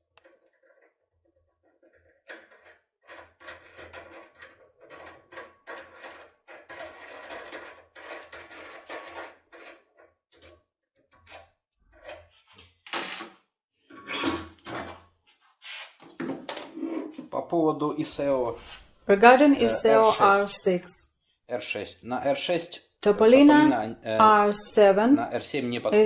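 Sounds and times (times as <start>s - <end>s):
lock pick scraping and clicking: 1.7s - 12.3s.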